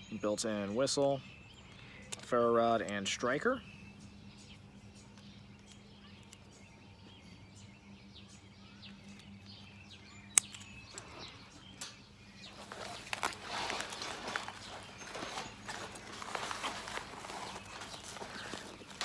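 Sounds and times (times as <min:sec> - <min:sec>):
faint birds chirping: 0:00.0 - 0:19.0
packaging rustling on metal table: 0:12.4 - 0:19.0.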